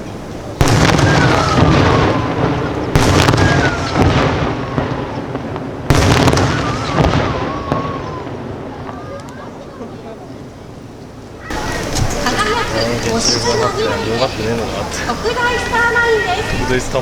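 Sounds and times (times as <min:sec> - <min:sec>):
rumbling crackling decay: 0:00.0 - 0:09.6
fireworks booming: 0:00.0 - 0:17.0
smaller fireworks bangs: 0:00.0 - 0:17.0.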